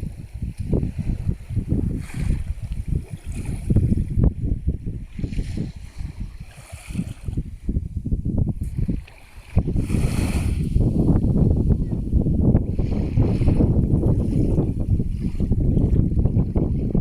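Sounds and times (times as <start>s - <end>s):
wind buffeting microphone: 0.0s - 17.0s
waves washing in: 5.0s - 7.7s, 8.6s - 11.6s.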